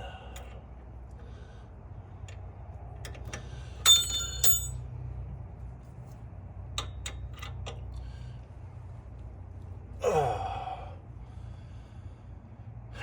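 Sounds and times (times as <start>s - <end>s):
metal tools clinking on metal: 3.1s - 4.8s.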